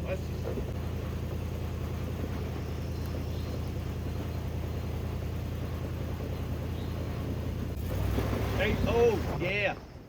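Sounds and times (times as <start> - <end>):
suv engine droning: 0.0 - 10.0.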